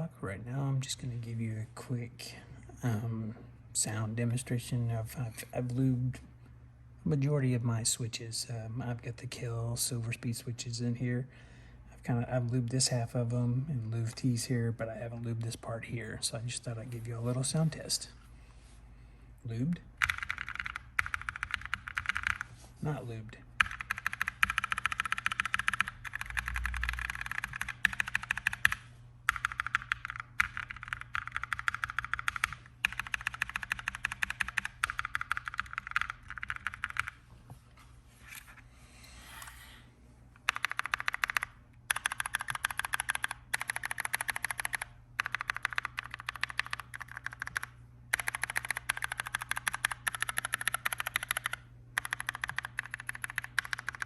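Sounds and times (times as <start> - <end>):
mechanical keyboard typing: 20.0 - 22.5, 23.6 - 37.2, 40.4 - 54.0.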